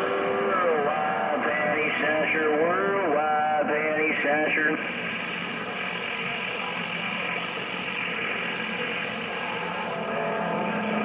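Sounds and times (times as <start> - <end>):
faint steady tones: 0.0 - 11.0
radio static hiss: 0.6 - 9.0.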